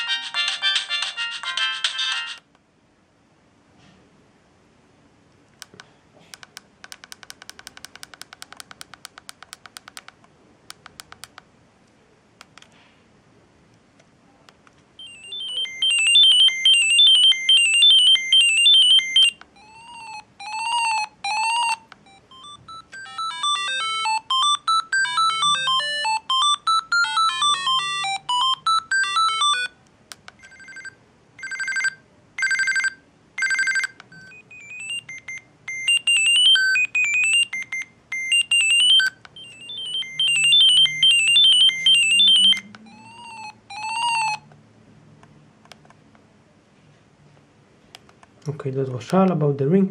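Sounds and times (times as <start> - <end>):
phone ringtone melodies: 0.0 - 2.4, 15.0 - 29.8, 30.4 - 44.5
quick clicks: 5.6 - 11.5
rising-and-falling chirps: 39.4 - 44.4.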